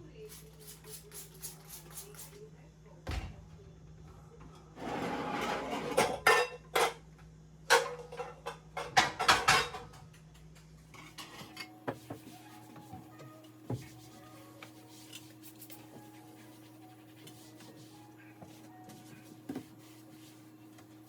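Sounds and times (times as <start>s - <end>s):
dishes and cutlery clinking: 5.4s - 7.0s, 7.7s - 10.2s, 10.9s - 12.2s.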